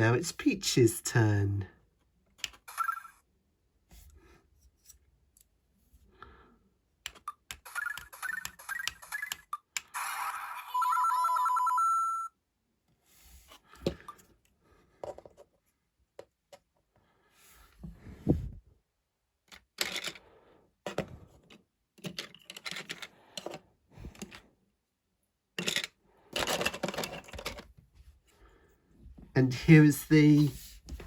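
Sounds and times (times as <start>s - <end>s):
plastic clicks of toy handling: 2.3s - 2.7s, 7.0s - 10.0s, 19.5s - 20.2s, 20.9s - 24.4s
electronic toy beeps and jingles: 2.7s - 3.2s, 7.2s - 12.3s.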